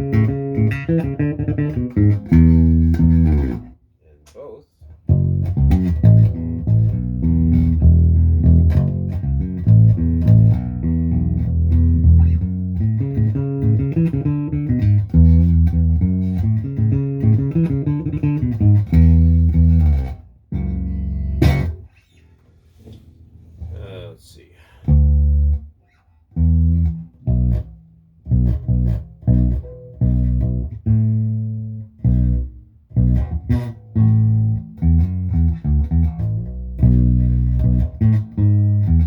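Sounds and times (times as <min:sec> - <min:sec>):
plucked electric bass notes: 0:00.0 - 0:03.8, 0:05.0 - 0:22.0, 0:24.8 - 0:39.0.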